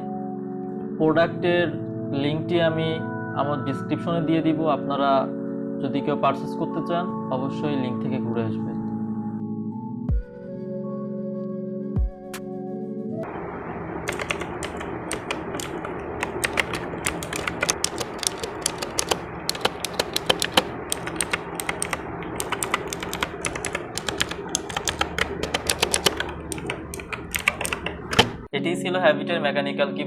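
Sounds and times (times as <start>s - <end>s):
mechanical keyboard key clicks: 14.1s - 28.5s.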